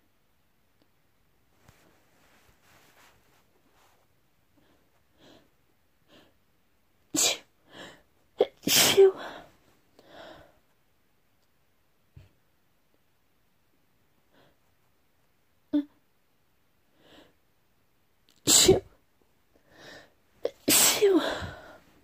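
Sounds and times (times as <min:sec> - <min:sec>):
person sneezing: 0:07.2 - 0:07.5, 0:08.4 - 0:09.4, 0:18.4 - 0:18.9, 0:20.5 - 0:21.7.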